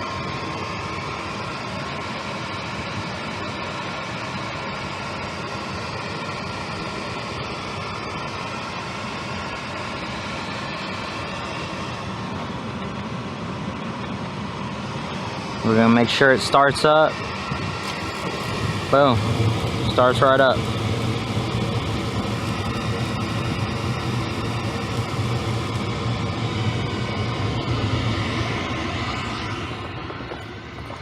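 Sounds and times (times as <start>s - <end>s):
faint steady hum: 17.8s - 29.9s
fan and motor whir: 17.8s - 31.0s.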